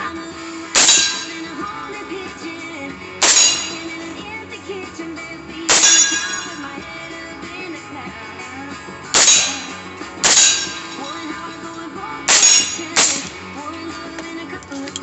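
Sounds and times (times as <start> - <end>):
background music: 0.0 - 15.0
gunshots with ringing tail: 9.2 - 11.3.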